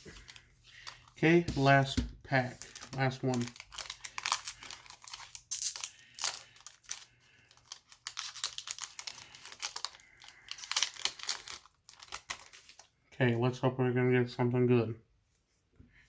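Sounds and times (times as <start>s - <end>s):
foil wrapper tearing and crinkling: 2.4s - 12.8s.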